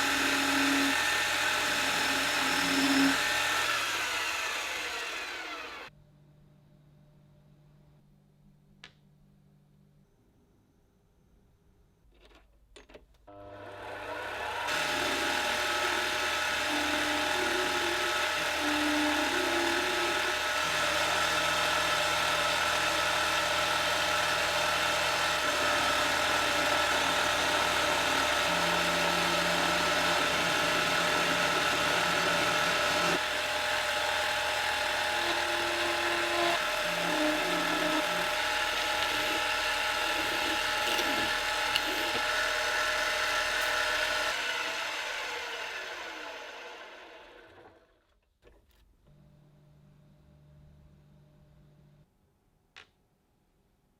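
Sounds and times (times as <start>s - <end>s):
power tool motor whine: 0.0s - 5.9s, 13.3s - 47.9s.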